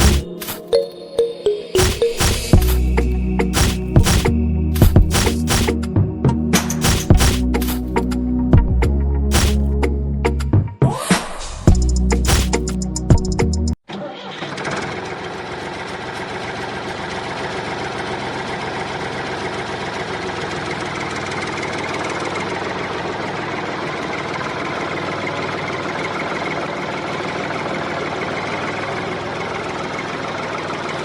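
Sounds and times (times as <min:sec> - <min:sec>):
small engine running steadily: 0:01.8 - 0:05.8, 0:06.6 - 0:08.0, 0:09.3 - 0:09.7, 0:14.4 - 0:31.0.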